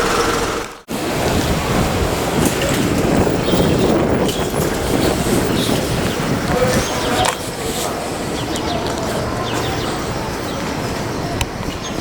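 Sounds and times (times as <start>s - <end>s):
traffic: 0.0s - 12.0s
wind buffeting microphone: 0.0s - 12.0s.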